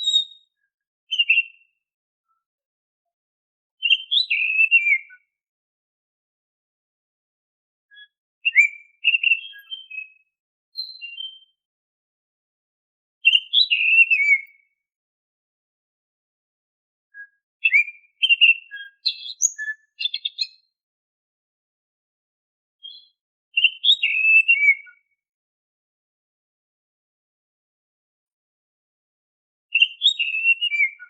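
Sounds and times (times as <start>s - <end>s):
bird singing whistled phrases: 0.0s - 1.7s, 3.8s - 5.3s, 7.9s - 11.6s, 13.2s - 14.7s, 17.1s - 20.7s, 22.8s - 25.1s, 29.7s - 31.0s.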